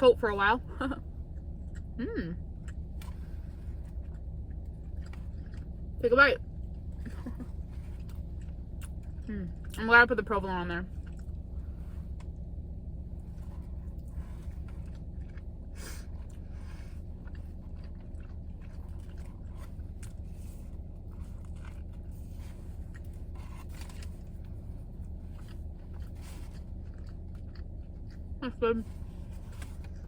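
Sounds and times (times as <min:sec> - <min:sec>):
low car interior hum: 0:00.0 - 0:30.0
chewing and crunching sandwich: 0:01.0 - 0:30.0
crackles and scrapes: 0:10.9 - 0:30.0.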